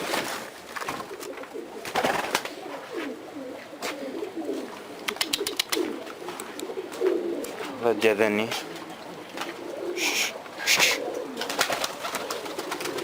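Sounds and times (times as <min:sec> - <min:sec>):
pigeons cooing: 0:00.0 - 0:13.0
sharp clicks: 0:05.1 - 0:05.8.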